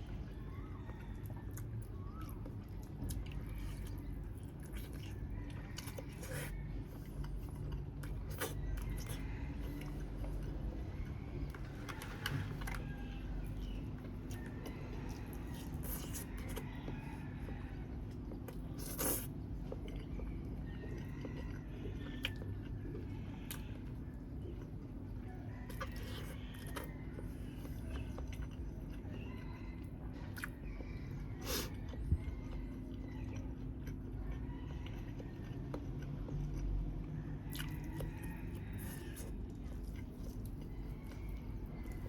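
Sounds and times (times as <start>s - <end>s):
person chewing and biting: 1.0s - 10.6s, 11.5s - 17.0s, 18.1s - 20.3s, 25.6s - 29.3s, 30.3s - 30.6s, 33.2s - 42.0s.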